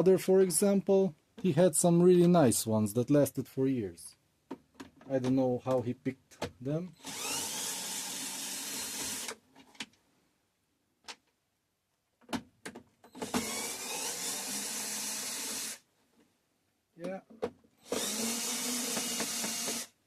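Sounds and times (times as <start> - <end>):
electric screwdriver whining: 7.0 - 9.4, 13.1 - 15.8, 17.8 - 20.0.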